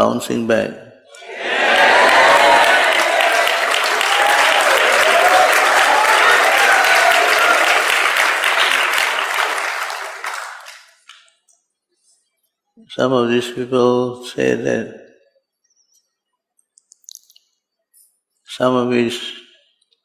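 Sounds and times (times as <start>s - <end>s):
congregation applauding: 1.2s - 11.2s.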